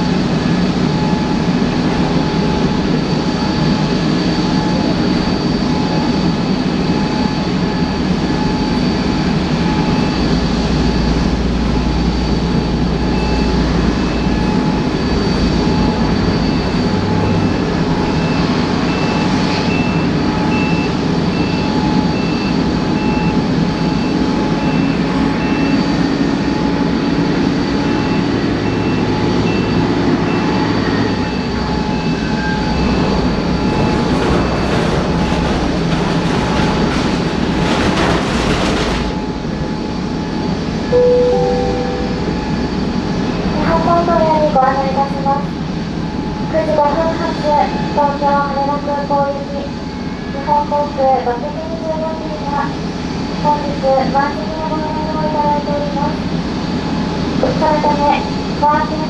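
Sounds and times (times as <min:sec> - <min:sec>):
airliner engine whine and rumble: 0:00.0 - 0:59.0
reversing beeper: 0:13.0 - 0:26.0, 0:40.9 - 0:43.3.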